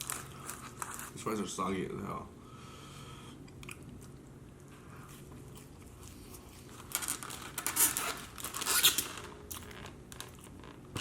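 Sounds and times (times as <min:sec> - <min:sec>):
food packaging rustling and tearing: 0:00.0 - 0:01.4, 0:05.1 - 0:11.0.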